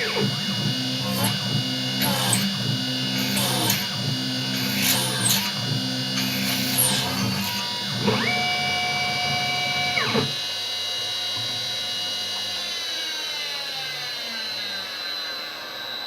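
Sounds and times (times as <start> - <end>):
cnc milling machine whine: 0.0 - 16.0.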